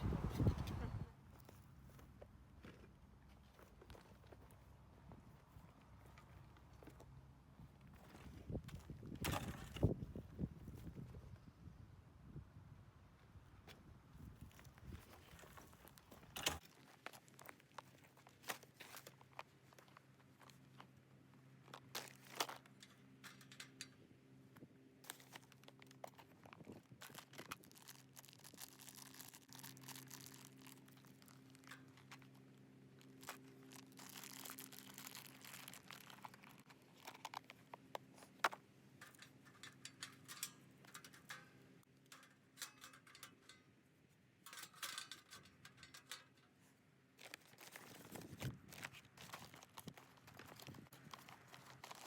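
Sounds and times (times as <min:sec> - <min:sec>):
small clicks and knocks: 0:21.7 - 0:24.0, 0:34.8 - 0:43.7, 0:44.4 - 0:52.0
wrapping material crinkling: 0:26.8 - 0:32.4, 0:33.0 - 0:38.4, 0:47.2 - 0:52.0.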